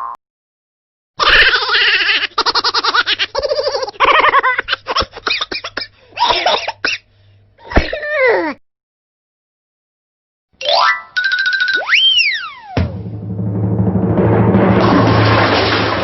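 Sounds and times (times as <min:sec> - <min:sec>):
person laughing: 0:01.2 - 0:05.6.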